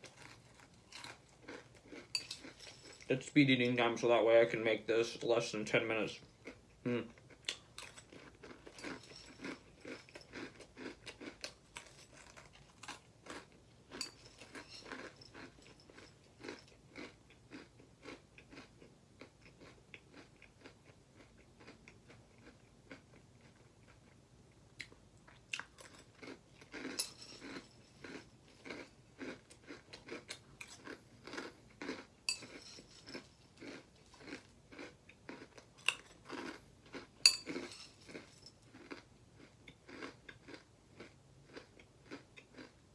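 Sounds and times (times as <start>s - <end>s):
person crunching cereal: 0.0s - 3.9s, 5.1s - 24.1s, 24.8s - 42.8s.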